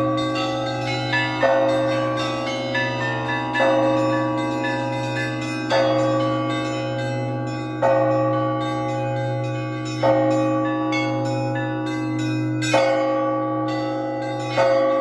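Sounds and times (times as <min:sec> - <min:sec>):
small bells chiming quickly: 0:00.0 - 0:13.0
heavy bell struck: 0:00.0 - 0:15.0.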